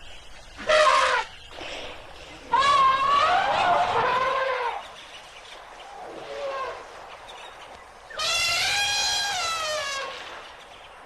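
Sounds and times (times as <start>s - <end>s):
elephant trumpeting: 8.2s - 10.2s.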